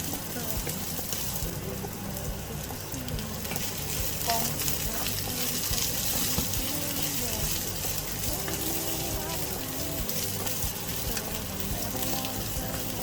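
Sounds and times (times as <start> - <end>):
food sizzling in hot oil: 0.0 - 13.0
spatula scraping pan: 3.2 - 13.0.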